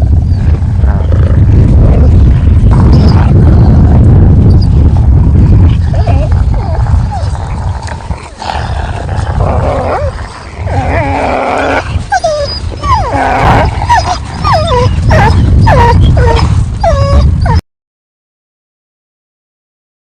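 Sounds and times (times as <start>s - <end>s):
low steady rumble: 0.0s - 17.6s
wolves yipping and whining: 5.8s - 7.6s, 9.5s - 17.6s.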